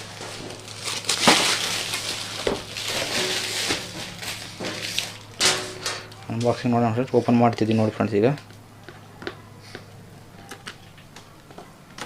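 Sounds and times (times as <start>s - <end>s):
packaging rustling and crinkling: 0.0s - 5.4s.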